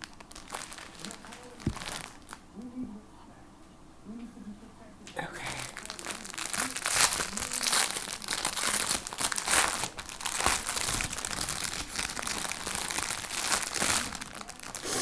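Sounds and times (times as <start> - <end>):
packaging crinkling and rustling: 0.0 - 2.4, 5.5 - 15.0.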